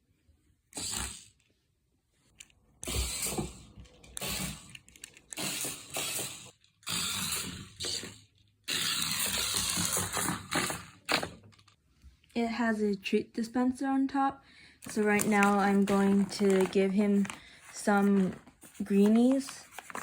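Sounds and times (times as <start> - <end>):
toy geared motor running: 0.8 - 1.4, 2.8 - 3.6, 4.2 - 11.3.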